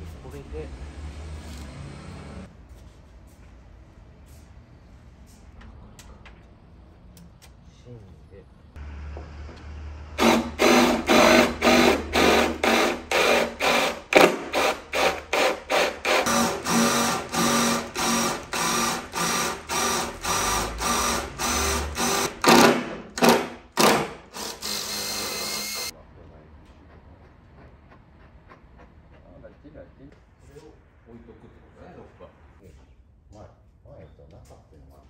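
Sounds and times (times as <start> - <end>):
electric power drill running: 10.2 - 22.6, 23.2 - 25.9.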